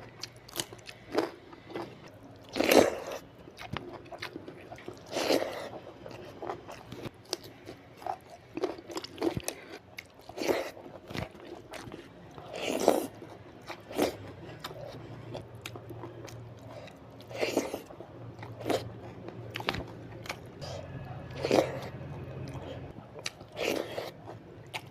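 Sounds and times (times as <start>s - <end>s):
crunchy bites and wet chewing: 0.0s - 24.9s.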